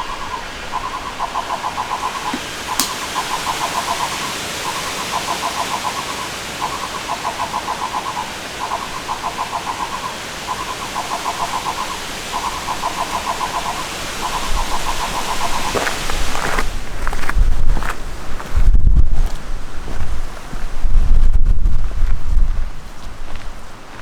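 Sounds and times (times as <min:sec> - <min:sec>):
steady hiss: 0:00.0 - 0:17.3.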